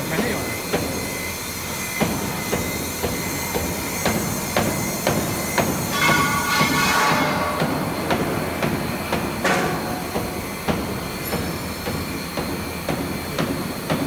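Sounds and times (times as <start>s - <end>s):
steady high hum: 0.0s - 14.0s
sharp machinery knocks: 4.1s - 14.0s.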